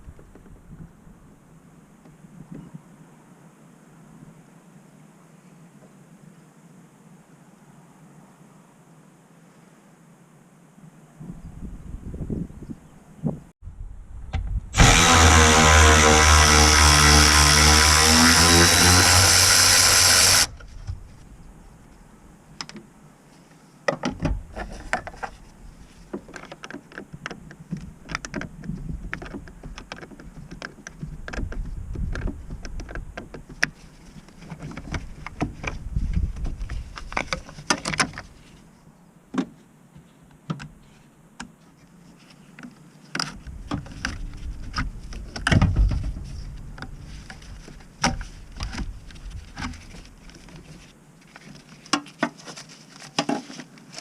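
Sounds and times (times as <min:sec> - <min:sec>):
power tool running: 0:14.8 - 0:20.5.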